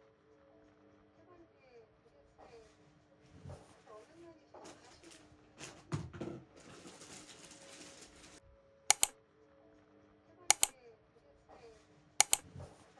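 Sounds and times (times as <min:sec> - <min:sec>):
sharp double clicks: 0:08.9 - 0:09.1, 0:10.5 - 0:10.7, 0:12.2 - 0:12.4.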